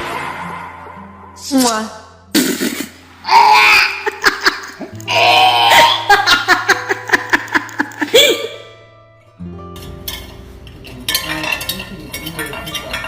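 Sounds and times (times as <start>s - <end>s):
person laughing hard: 3.6s - 8.7s.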